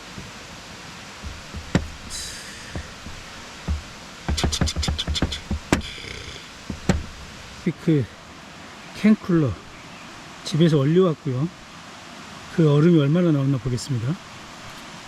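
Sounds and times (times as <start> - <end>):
cleaver chopping on cutting board: 1.2 - 7.6.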